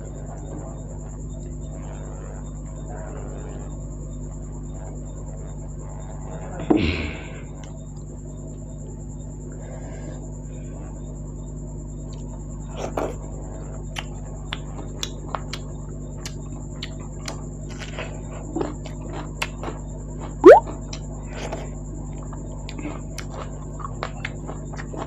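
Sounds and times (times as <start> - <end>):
wet chewing and lip smacks: 13.9 - 25.0.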